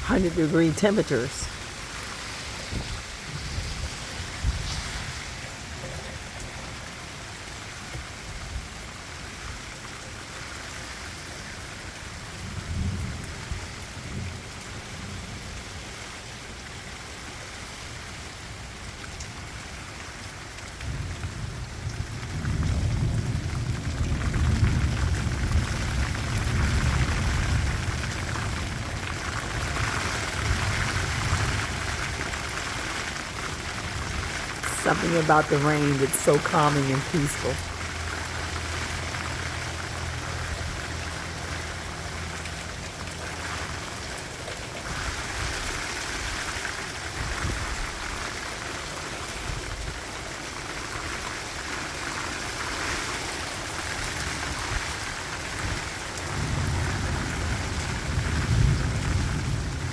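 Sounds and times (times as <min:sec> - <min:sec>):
rain falling steadily: 0:00.0 - 0:59.9
low thunder rumble: 0:12.4 - 0:15.5, 0:20.8 - 0:35.6, 0:53.8 - 0:59.9.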